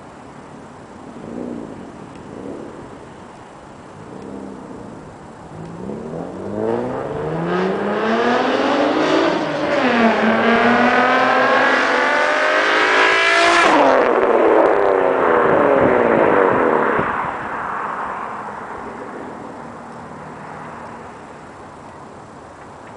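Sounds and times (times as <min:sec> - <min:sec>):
car accelerating past: 0:04.0 - 0:21.3.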